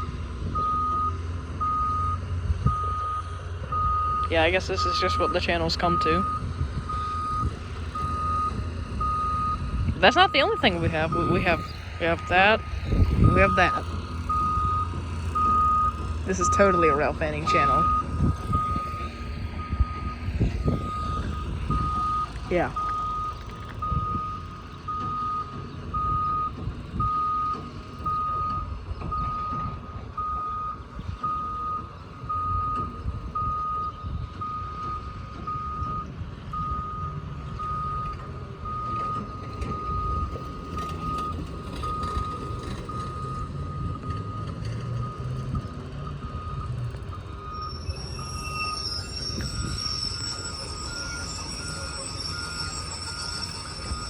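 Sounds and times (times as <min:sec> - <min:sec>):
diesel engine rumble: 0:00.0 - 0:54.0
backup alarm beeping: 0:00.5 - 0:54.0
high steady squeal: 0:04.2 - 0:29.8, 0:37.6 - 0:54.0
higher-pitched beeper: 0:04.4 - 0:24.5, 0:47.2 - 0:54.0.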